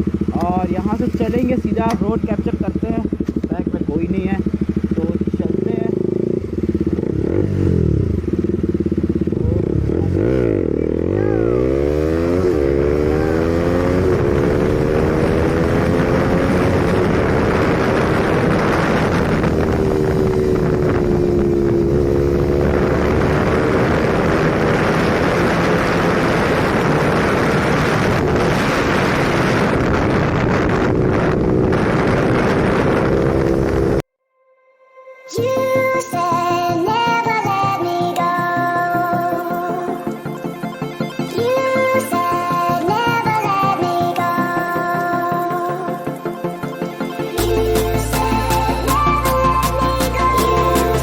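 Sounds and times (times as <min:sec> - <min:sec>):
motorcycle engine accelerating: 0:00.0 - 0:34.1, 0:35.4 - 0:51.0
wind rushing on microphone: 0:09.3 - 0:34.0.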